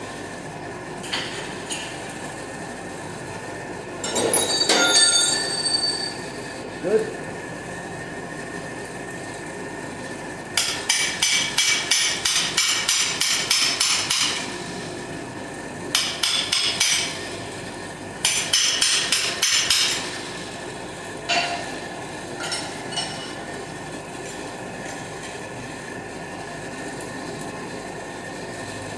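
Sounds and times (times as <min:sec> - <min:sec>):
hammer striking steel on anvil: 0:10.6 - 0:14.5, 0:15.9 - 0:17.2, 0:18.2 - 0:20.0.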